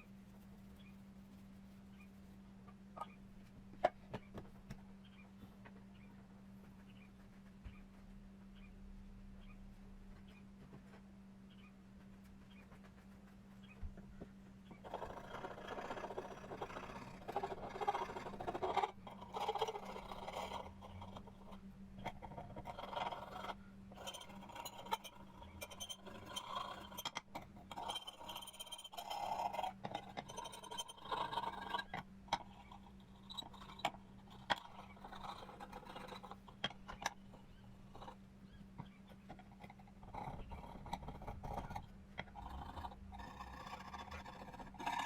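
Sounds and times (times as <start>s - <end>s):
steady low hum: 0.0s - 45.0s
hand scraping metal plate: 14.8s - 38.2s.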